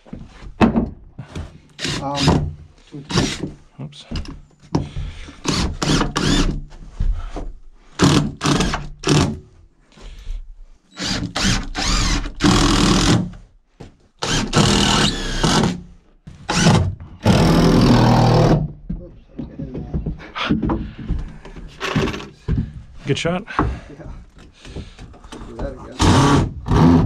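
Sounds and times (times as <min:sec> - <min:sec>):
lumber knocking and clattering: 0:00.4 - 0:01.6, 0:02.3 - 0:08.3, 0:18.5 - 0:26.0
power drill running: 0:05.4 - 0:06.6, 0:11.0 - 0:13.2, 0:14.2 - 0:15.8, 0:16.5 - 0:18.6.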